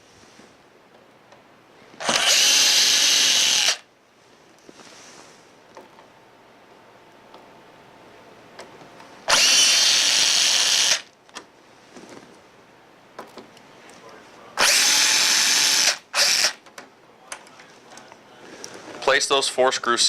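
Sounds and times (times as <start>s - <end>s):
power drill driving out screws: 2.0s - 3.8s, 9.3s - 11.1s, 14.6s - 16.6s.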